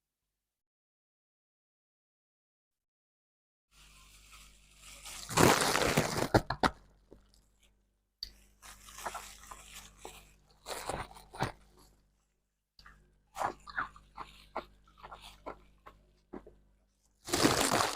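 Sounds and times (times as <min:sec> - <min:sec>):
ice crunching between teeth: 0:05.2 - 0:06.7, 0:08.9 - 0:11.6, 0:17.2 - 0:17.9.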